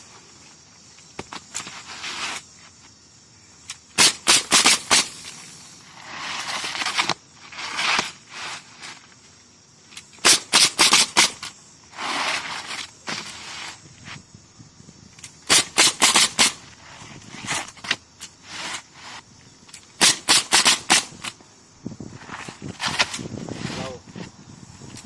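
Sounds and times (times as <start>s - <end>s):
shingles rustling and scraping: 1.2s - 2.8s, 4.0s - 9.3s, 9.9s - 14.2s, 15.2s - 21.4s, 22.1s - 24.3s
pneumatic nailer shots: 3.7s - 5.5s, 10.1s - 12.5s, 15.2s - 16.8s, 20.0s - 21.4s.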